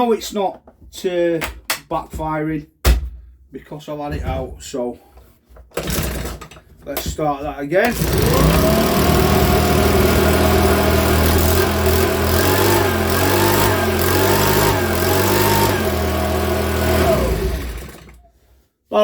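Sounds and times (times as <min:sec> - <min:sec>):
leaf blower engine running: 0:07.8 - 0:18.3.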